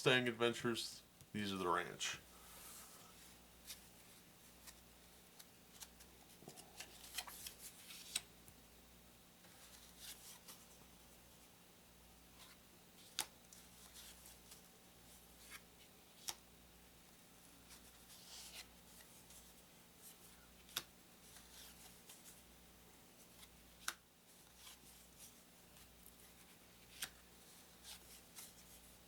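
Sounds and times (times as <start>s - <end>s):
paper cards rustling and sliding: 2.6s - 8.3s, 9.4s - 10.8s, 12.4s - 16.4s, 17.7s - 22.5s, 23.2s - 29.0s.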